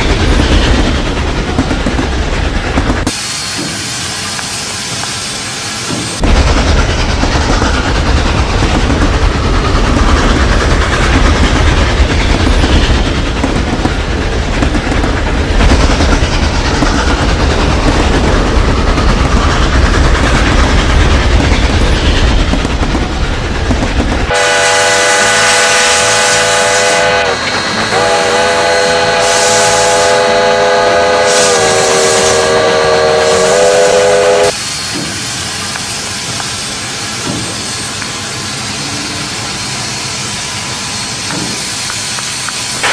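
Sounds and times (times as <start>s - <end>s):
train rumbling: 0.0s - 42.9s
train chime whistle: 24.3s - 34.6s.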